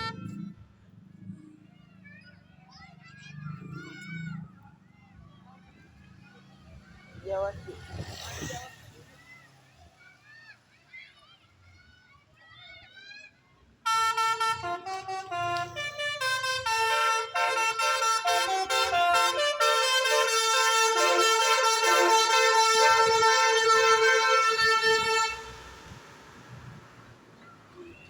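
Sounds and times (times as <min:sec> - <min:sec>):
musical multi-tone bus horn: 0:00.0 - 0:00.6, 0:13.8 - 0:26.2.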